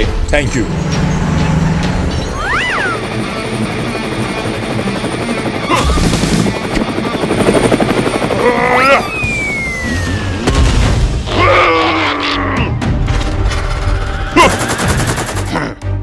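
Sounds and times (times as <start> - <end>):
music: 0.0 - 16.0
fast mechanical chopping: 5.7 - 6.8
rising and falling whistle: 9.0 - 10.5.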